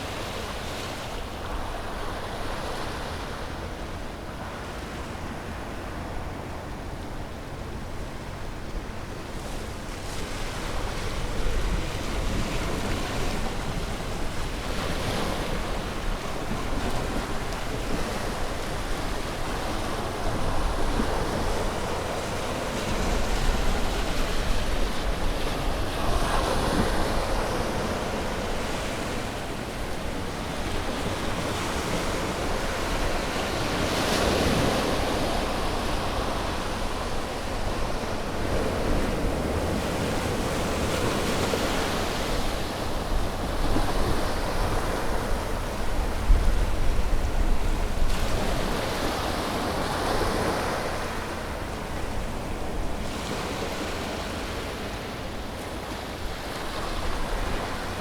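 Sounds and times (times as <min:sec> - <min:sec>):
sea waves breaking on shore: 0:00.0 - 0:58.0
wind rumble on microphone: 0:00.1 - 0:55.1.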